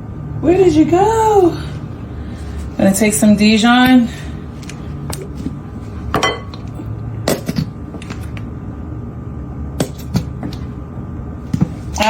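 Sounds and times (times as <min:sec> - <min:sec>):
kitchen containers and utensils clinking: 0:06.1 - 0:06.9.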